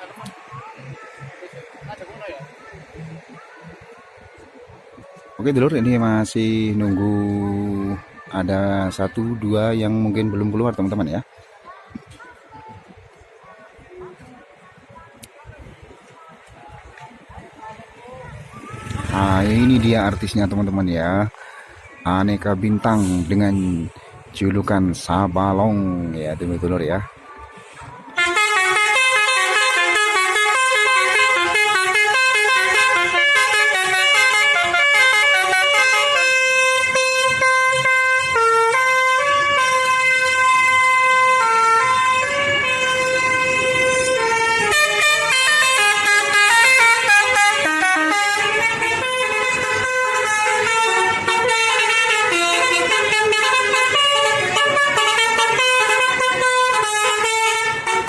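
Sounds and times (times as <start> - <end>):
air horns playing a melody: 28.2 - 58.0.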